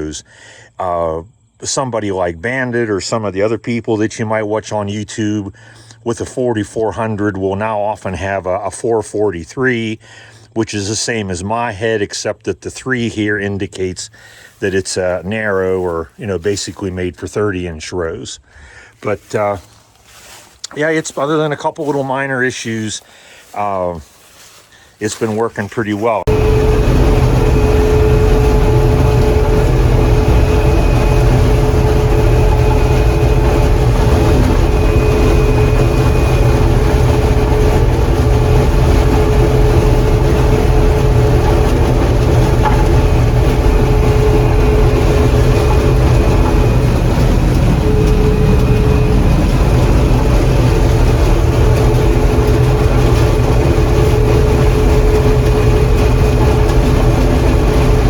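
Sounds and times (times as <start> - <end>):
combine harvester droning: 0.0 - 58.0
high whine: 25.0 - 58.0.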